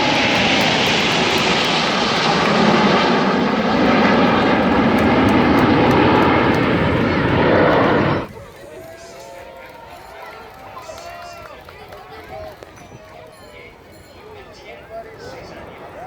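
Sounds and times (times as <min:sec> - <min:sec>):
jets flying past: 0:00.0 - 0:08.3.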